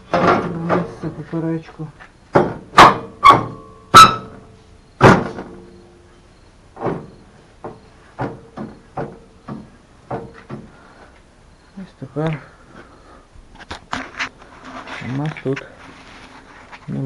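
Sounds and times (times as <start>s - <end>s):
loud metal clanks: 2.3s - 5.8s.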